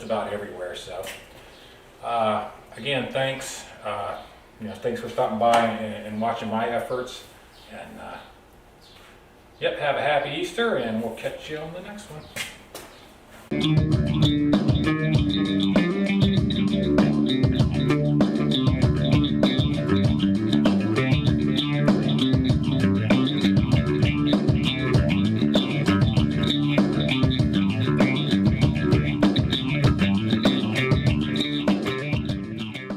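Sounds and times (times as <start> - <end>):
guitar rock music: 13.5 - 32.9.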